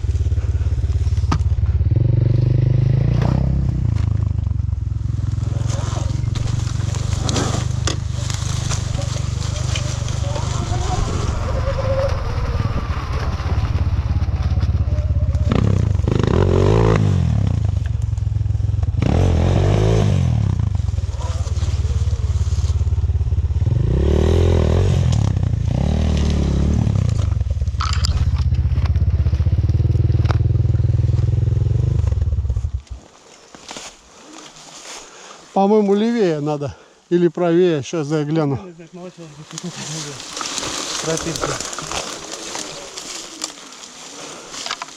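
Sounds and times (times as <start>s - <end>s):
vehicle engine revving: 0.0s - 32.9s.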